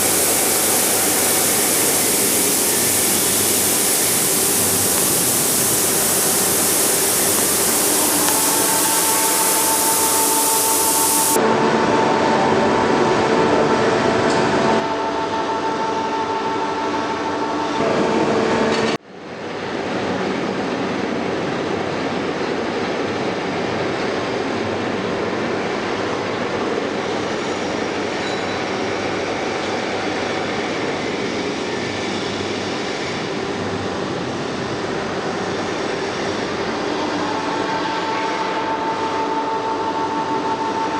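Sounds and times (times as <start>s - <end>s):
whining tones: 0.0s - 12.8s
machine hum: 0.0s - 19.0s
rushing machine running noise: 0.0s - 19.0s.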